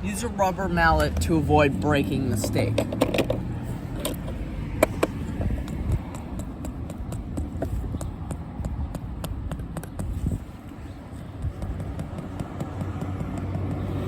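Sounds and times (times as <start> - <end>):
rubber mallet knocking plastic stake: 4.0 - 10.4, 11.3 - 14.0.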